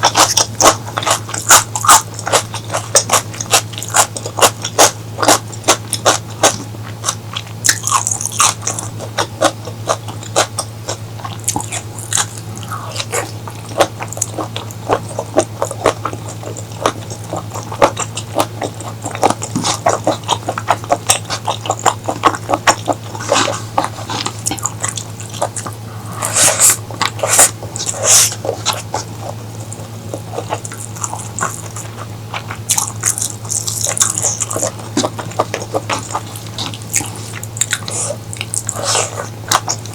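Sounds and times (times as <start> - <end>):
mouth chewing and crunching food: 0.0 - 39.9
steady low hum: 0.0 - 39.9
hissing slurps: 25.9 - 28.4.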